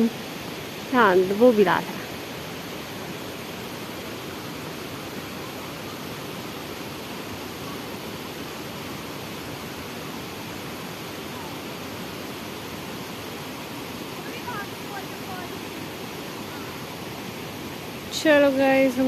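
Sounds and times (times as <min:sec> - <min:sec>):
steady rushing noise: 0:00.0 - 0:19.0.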